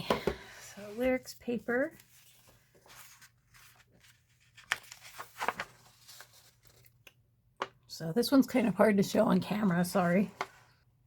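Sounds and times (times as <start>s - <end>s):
paper rustling and crinkling: 0.9s - 7.2s.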